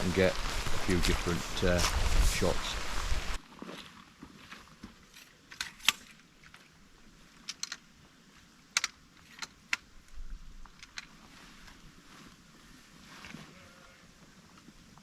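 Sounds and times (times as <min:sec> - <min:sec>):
faint steady hiss: 0:00.0 - 0:03.4.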